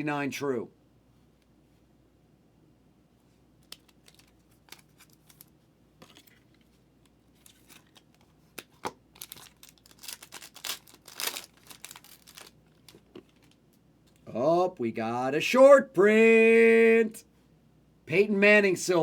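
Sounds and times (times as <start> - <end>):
packaging rustling and crinkling: 3.7 - 6.7, 7.3 - 13.6
packaging tearing: 9.2 - 13.6.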